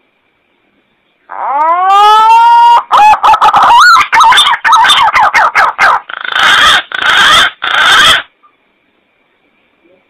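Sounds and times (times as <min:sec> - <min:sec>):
recorded pigeon calls: 0:01.3 - 0:08.3.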